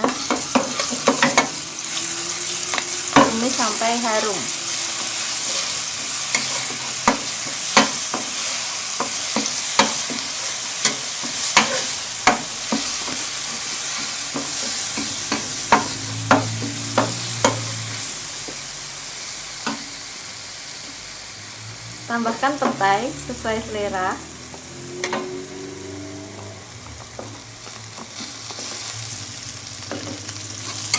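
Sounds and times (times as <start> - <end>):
spatula scraping a pan: 0.0 - 18.2, 24.6 - 25.6, 29.9 - 30.9
paste sizzling in hot oil: 0.0 - 30.9.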